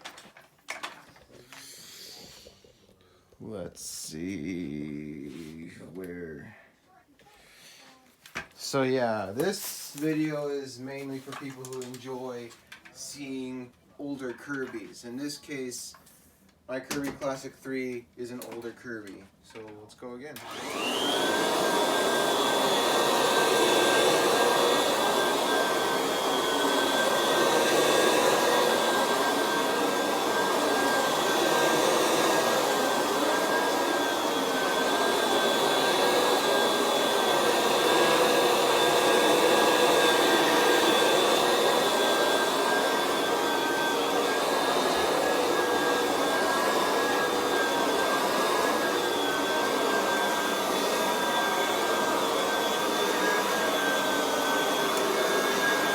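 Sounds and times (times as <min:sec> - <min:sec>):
upright vacuum cleaner running: 0:20.4 - 0:55.9.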